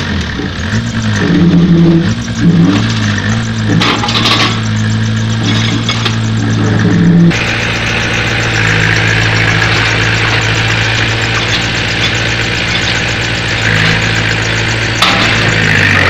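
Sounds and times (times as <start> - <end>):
diesel engine running: 0.0 - 16.0.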